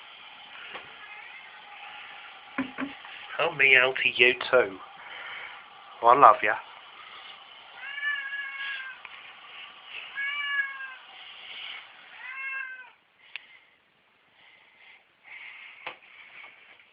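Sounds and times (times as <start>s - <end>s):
cat meowing: 0.9s - 1.5s, 7.8s - 9.0s, 10.1s - 11.0s, 12.1s - 13.0s.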